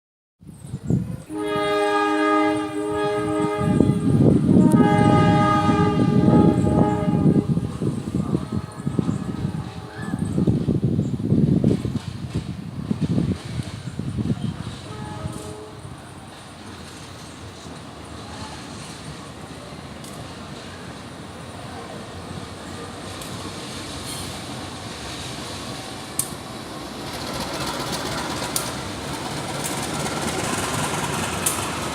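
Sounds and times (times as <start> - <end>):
low train rumble: 0.4 - 31.9
locomotive horn chord: 1.3 - 9.9, 14.9 - 15.9.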